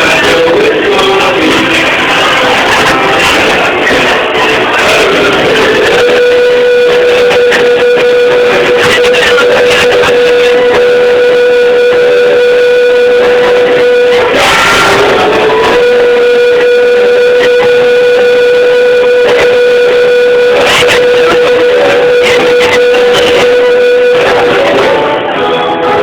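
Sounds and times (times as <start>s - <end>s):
loud guitar music: 0.0s - 26.0s.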